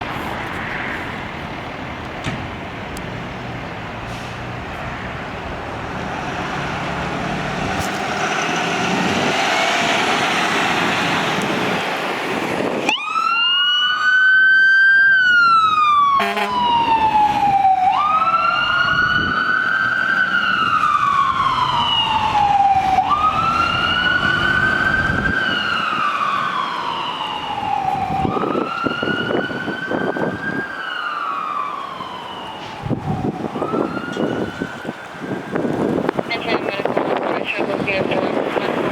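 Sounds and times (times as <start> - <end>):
road and traffic noise: 0.0 - 38.9
electronic sirens wailing: 12.8 - 38.1.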